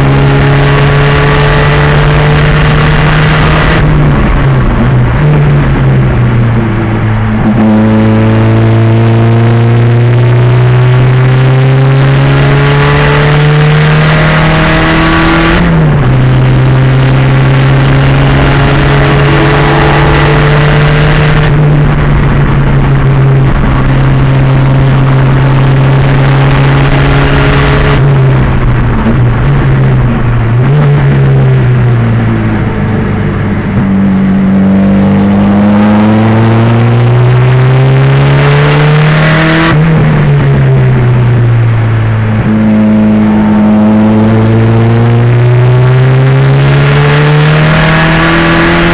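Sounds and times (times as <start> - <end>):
car engine at full throttle: 0.0 - 48.9.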